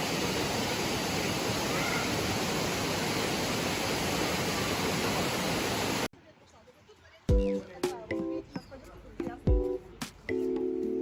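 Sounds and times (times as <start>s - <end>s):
waterfall rushing: 0.0s - 6.1s.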